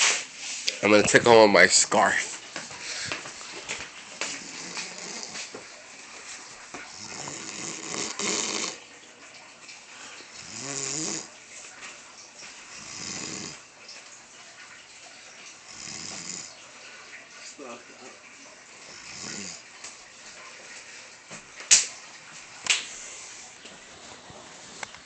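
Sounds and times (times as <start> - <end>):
man snoring: 4.4 - 5.4, 6.9 - 8.8, 10.4 - 11.3, 12.7 - 13.6, 15.7 - 16.5, 18.9 - 19.6.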